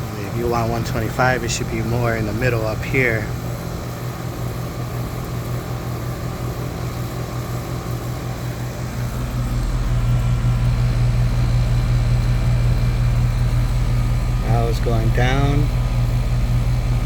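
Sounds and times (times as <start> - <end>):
air conditioner compressor hum: 0.0 - 17.0.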